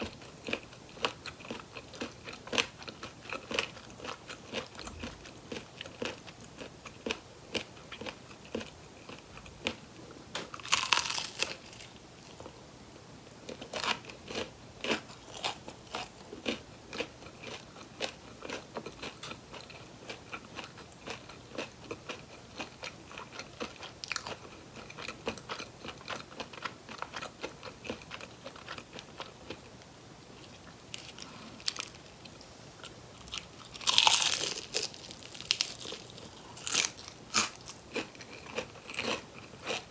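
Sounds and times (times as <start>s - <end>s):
crunchy bite: 10.5s - 11.9s, 33.2s - 39.8s.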